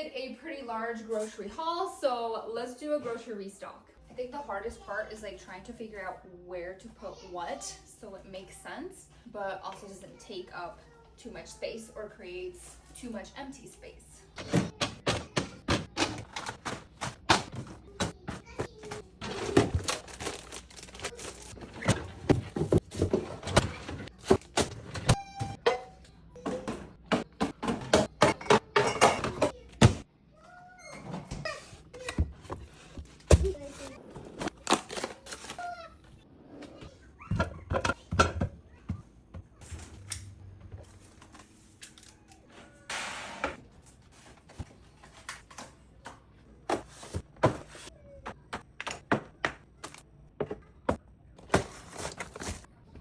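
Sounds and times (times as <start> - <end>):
packaging rustle: 19.2 - 21.8.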